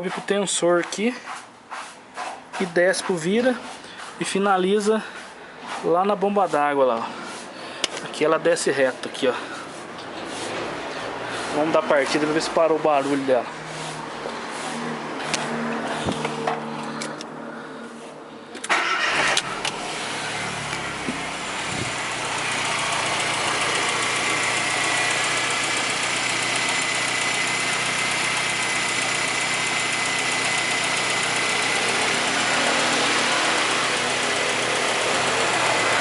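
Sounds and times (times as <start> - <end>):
car engine starting and idling: 18.6 - 36.0.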